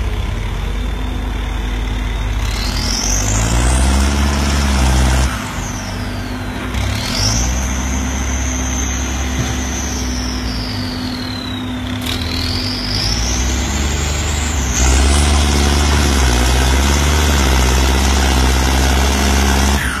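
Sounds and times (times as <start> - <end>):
tractor diesel engine running hard: 0.0 - 20.0
turbo whistle: 5.4 - 15.2.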